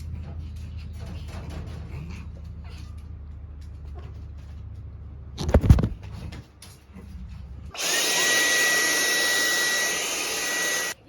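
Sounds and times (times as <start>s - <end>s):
vacuum cleaner motor whine: 7.8s - 11.0s.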